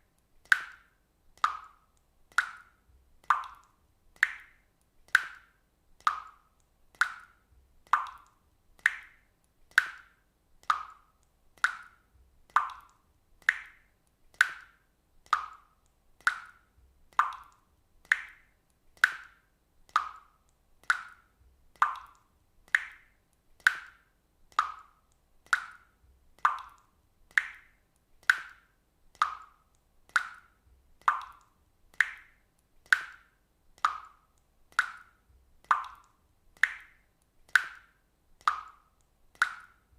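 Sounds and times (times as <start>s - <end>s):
water droplets plopping: 11.6s - 13.8s, 34.8s - 37.8s.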